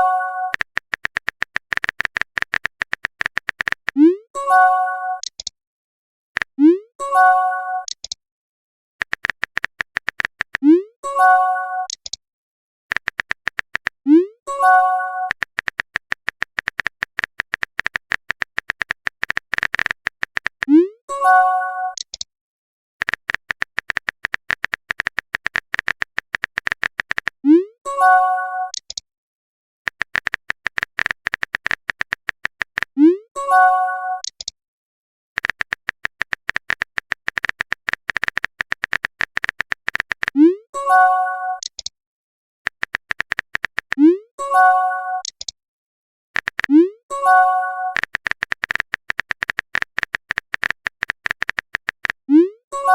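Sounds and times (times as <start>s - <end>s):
keyboard typing clicks: 0.0s - 4.2s, 5.2s - 5.5s, 7.8s - 8.2s, 9.0s - 10.9s, 11.8s - 12.2s, 12.9s - 20.9s, 21.9s - 22.3s, 23.0s - 27.6s, 28.7s - 29.0s, 29.9s - 33.2s, 33.8s - 34.6s, 35.4s - 40.5s, 41.6s - 41.9s, 42.7s - 44.2s, 45.2s - 45.6s, 46.4s - 52.9s.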